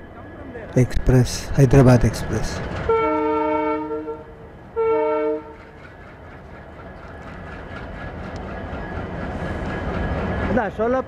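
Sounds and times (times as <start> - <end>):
locomotive horn blast: 2.9 - 5.6.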